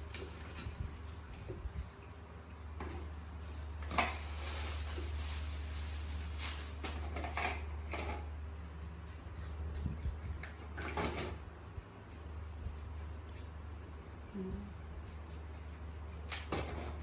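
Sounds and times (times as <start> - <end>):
knocks and rustles of handling: 2.7 - 8.3.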